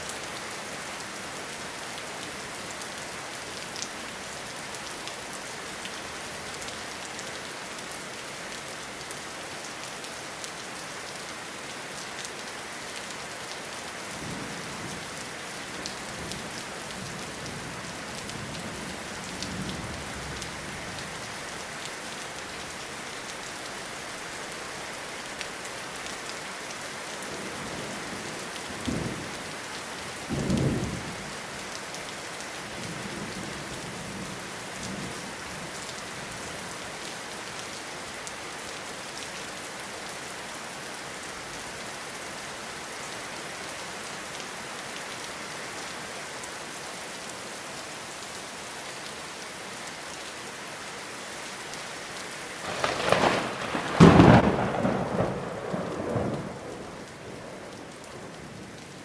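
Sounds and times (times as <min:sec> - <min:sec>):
rain on leaves and ground: 0:00.0 - 0:59.0
low thunder rumbles: 0:52.7 - 0:58.6.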